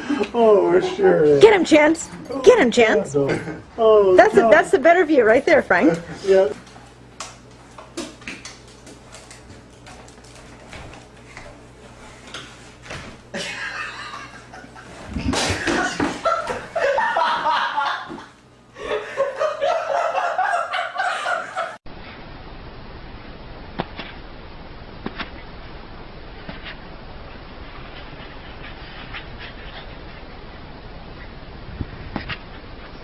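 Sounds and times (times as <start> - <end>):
people laughing: 13.4 - 21.8.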